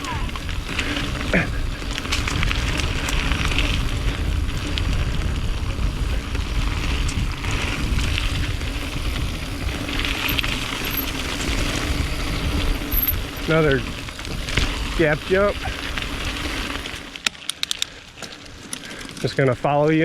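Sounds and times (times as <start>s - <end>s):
wind buffeting microphone: 0.0s - 17.2s
bike tyres rolling over dirt: 0.0s - 20.0s
small clicks: 16.9s - 19.3s.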